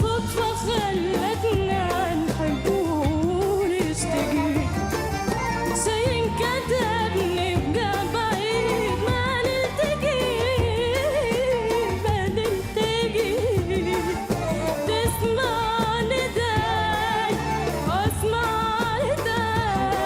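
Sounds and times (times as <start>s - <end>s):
band accompaniment: 0.0s - 20.0s
woman singing: 0.0s - 20.0s.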